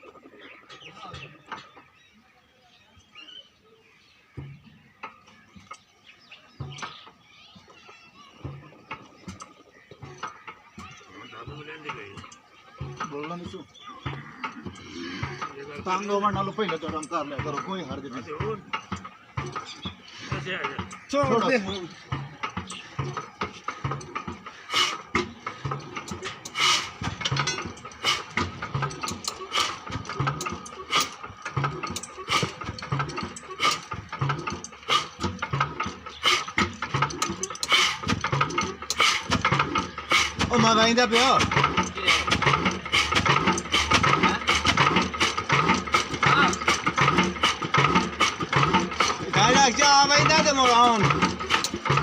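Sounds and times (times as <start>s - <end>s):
engine mechanism clattering: 0.1s - 52.0s
diesel engine thudding: 8.4s - 52.0s
loud hissing bursts: 26.5s - 27.0s.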